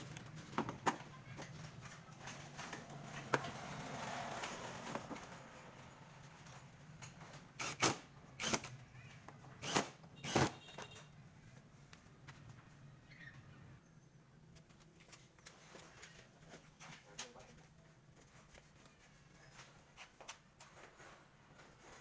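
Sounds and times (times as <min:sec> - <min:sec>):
hard objects clicking and knocking: 0:00.0 - 0:11.1.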